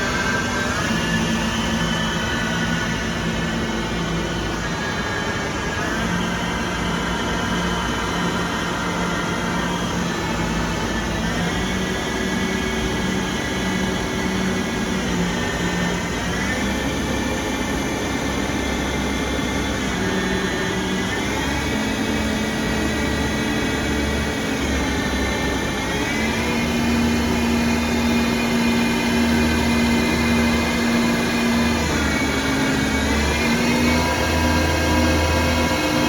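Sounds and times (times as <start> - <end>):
lathe mechanical whine: 0.0 - 36.0.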